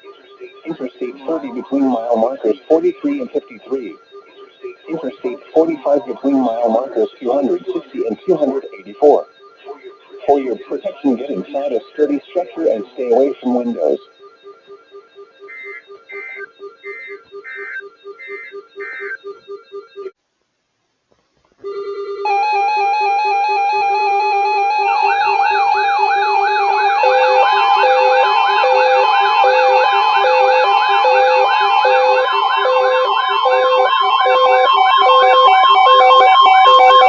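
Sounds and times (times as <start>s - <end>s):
regular beeps: 0.0s - 20.2s, 23.8s - 37.0s
steady electronic tones: 0.0s - 20.2s, 21.8s - 37.0s
fast wailing siren sweep: 13.9s - 19.2s, 22.3s - 37.0s.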